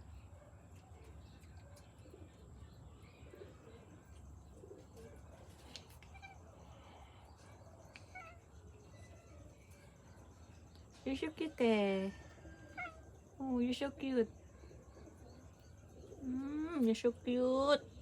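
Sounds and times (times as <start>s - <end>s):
bird cooing: 3.2s - 5.5s.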